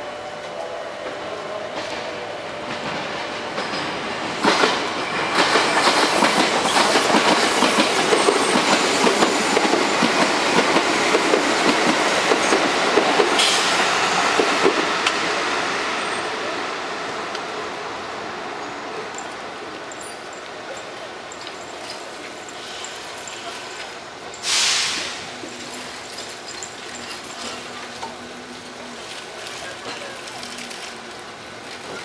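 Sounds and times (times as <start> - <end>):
train wheels clattering on rails: 1.0 - 15.4.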